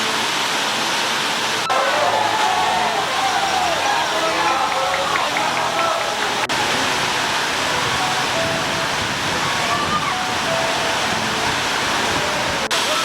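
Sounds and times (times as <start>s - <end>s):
heavy rain: 0.0s - 13.0s.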